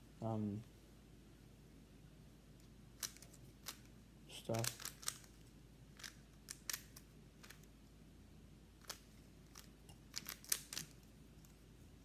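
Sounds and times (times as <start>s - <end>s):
puzzle cube clicking: 4.6s - 5.4s, 6.0s - 7.7s, 8.8s - 11.0s.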